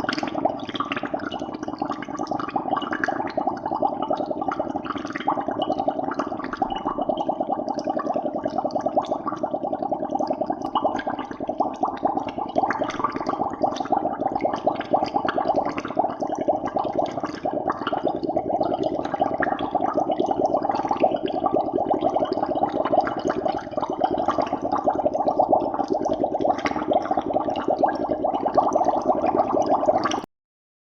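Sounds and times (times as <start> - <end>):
water bubbling: 0.0 - 30.3.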